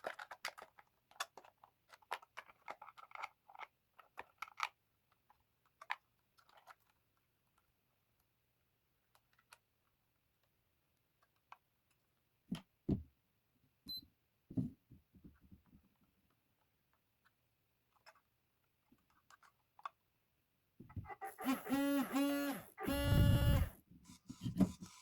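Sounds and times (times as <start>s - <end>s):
light clicks and taps handling packaging: 0.0s - 12.7s, 15.2s - 20.1s.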